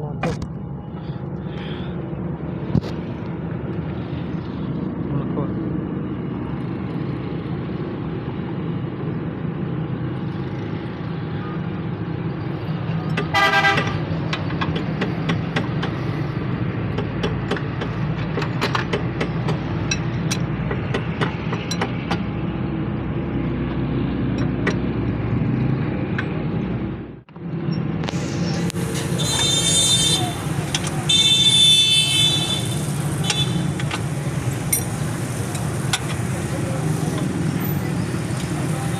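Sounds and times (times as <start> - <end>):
motor vehicle engine rumble: 0.0 - 38.9
sharp clicks and knocks: 13.1 - 16.1, 16.8 - 22.4, 24.3 - 24.9, 30.6 - 31.1, 33.2 - 36.5
car horn tooting: 13.3 - 14.0, 29.1 - 33.8.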